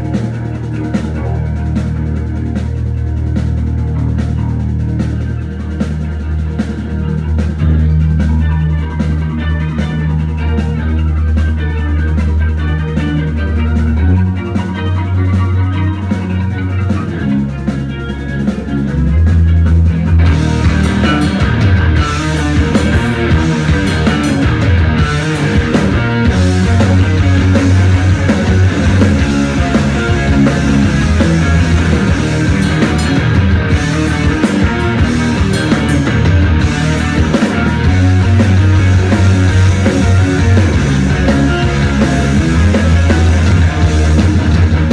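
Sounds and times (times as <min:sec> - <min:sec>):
held bass notes: 0:00.0 - 0:44.9
rock band playing live: 0:00.0 - 0:44.9
steady drum beat: 0:00.0 - 0:44.9.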